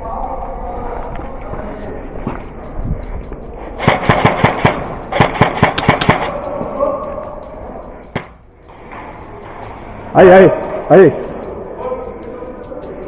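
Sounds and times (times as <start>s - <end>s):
airsoft rifle firing bursts: 3.8s - 6.4s.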